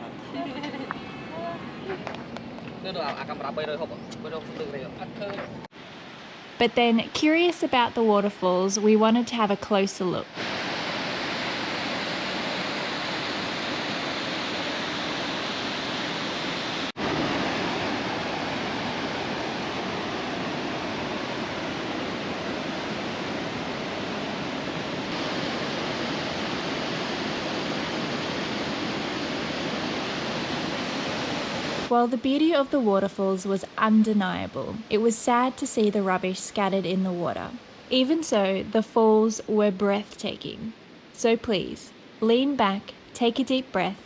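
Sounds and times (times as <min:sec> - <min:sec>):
waterfall rushing: 0:10.4 - 0:31.9.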